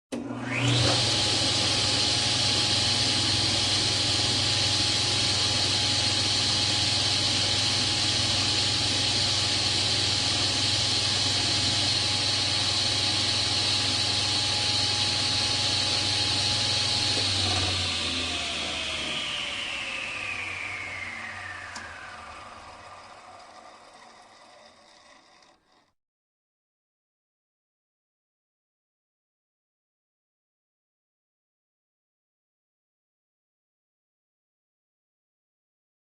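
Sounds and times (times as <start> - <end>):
table saw whining: 0.1 - 26.0.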